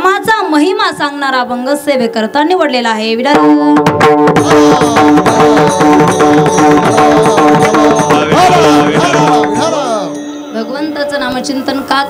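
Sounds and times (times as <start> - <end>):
hand drum strokes: 3.8 - 10.3
harmonium holding notes: 4.4 - 12.0.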